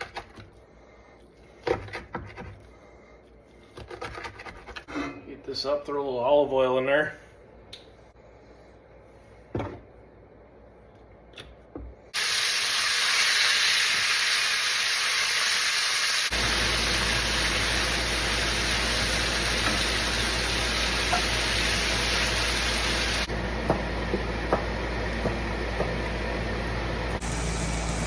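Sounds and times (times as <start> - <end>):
meat sizzling in a pan: 12.2 - 23.3
low hum: 16.3 - 28.0.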